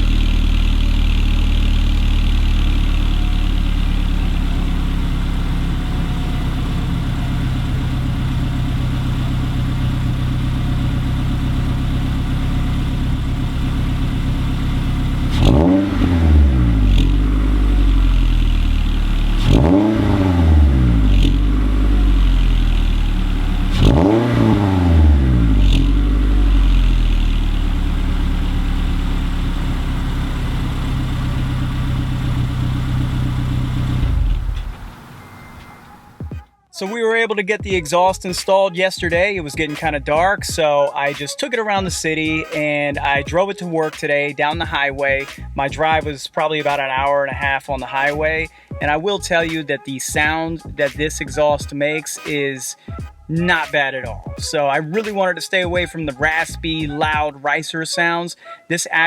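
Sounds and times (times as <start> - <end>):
car engine idling and revving: 0.0 - 36.4.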